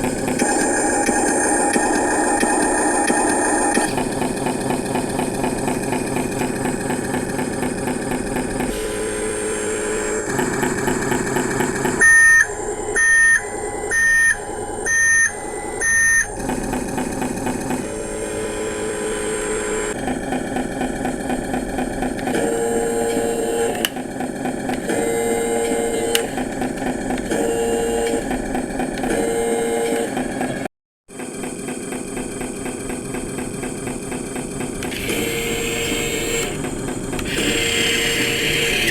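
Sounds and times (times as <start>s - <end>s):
simulated truck engine: 0.0s - 38.9s
loud electronic beeps: 12.0s - 16.4s.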